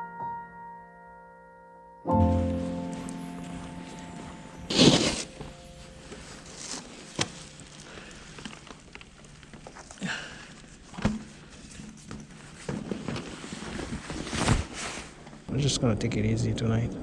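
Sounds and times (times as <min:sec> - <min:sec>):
low background noise: 0:00.0 - 0:17.0
rustles: 0:02.2 - 0:15.5.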